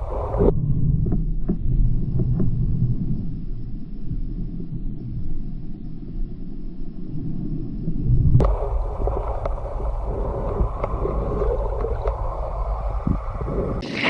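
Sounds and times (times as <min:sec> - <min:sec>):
low underwater rumble: 0:00.0 - 0:14.0
faint clicks: 0:08.4 - 0:13.8
gurgling hiss: 0:08.4 - 0:14.0.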